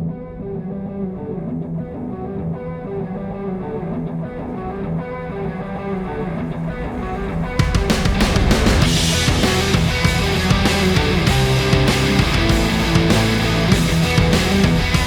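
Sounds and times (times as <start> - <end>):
picked guitar line: 0.0 - 15.0
rock band playing: 7.7 - 15.0.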